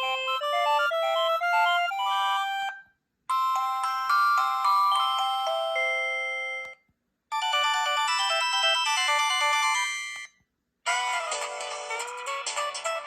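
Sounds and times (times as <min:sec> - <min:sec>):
mobile phone ringtones: 0:07.4 - 0:13.0.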